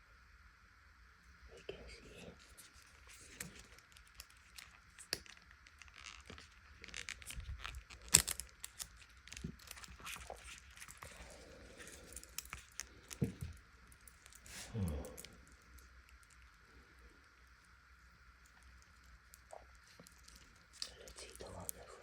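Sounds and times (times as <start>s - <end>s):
packaging rustling and crinkling: 2.5s - 14.5s.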